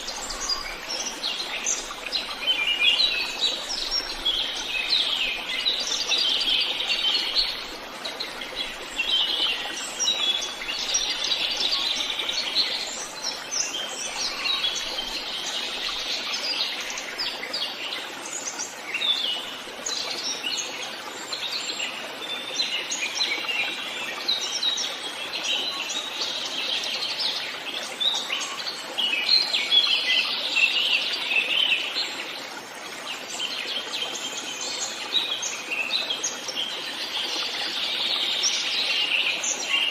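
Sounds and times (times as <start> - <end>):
birds chirping and trilling: 0.0 - 20.8.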